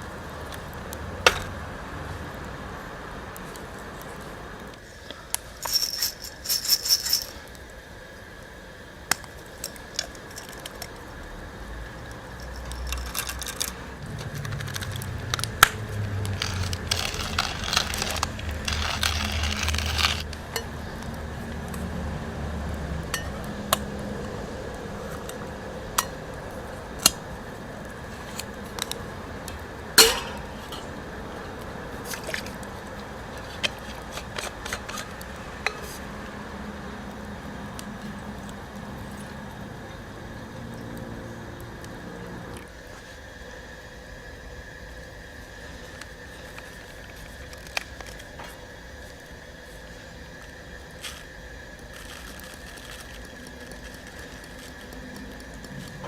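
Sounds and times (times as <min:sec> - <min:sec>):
low rumble and hiss: 0:00.0 - 0:56.0
metal cookware clinking: 0:30.0 - 0:30.9.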